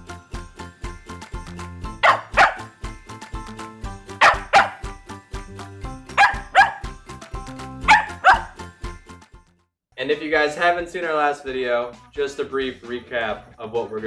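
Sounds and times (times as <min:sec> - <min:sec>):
upbeat pop music: 0:00.0 - 0:09.2
dog double barks: 0:02.0 - 0:02.7, 0:04.2 - 0:04.8, 0:06.2 - 0:06.8, 0:07.9 - 0:08.6.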